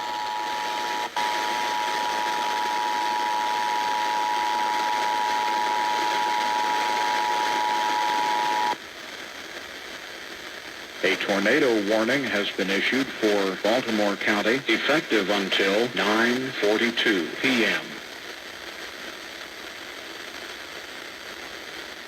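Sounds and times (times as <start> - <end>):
two-tone alarm: 0.0 - 8.8
broadcast hiss: 0.0 - 22.0.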